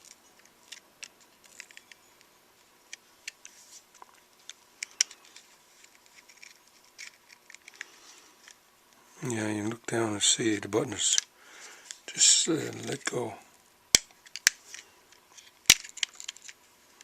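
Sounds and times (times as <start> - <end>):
light scraping of plastic parts: 0.0 - 9.8, 10.4 - 13.4, 14.0 - 17.0
small plastic clicks: 13.9 - 16.6.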